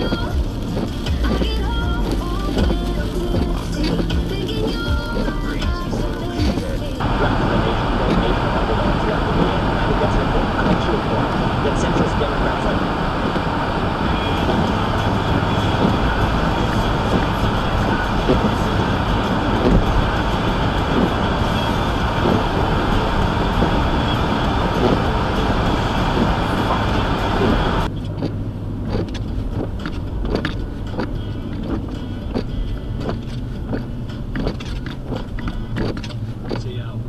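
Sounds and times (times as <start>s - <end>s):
loud rushing hiss: 0.0s - 27.9s
car low rumble: 0.0s - 37.0s.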